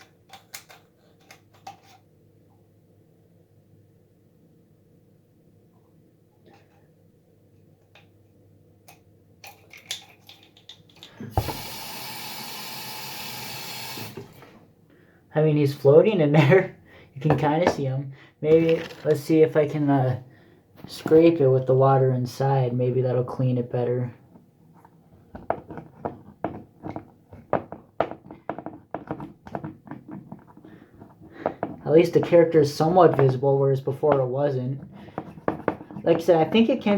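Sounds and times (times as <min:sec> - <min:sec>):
water tap running: 0:11.3 - 0:14.5.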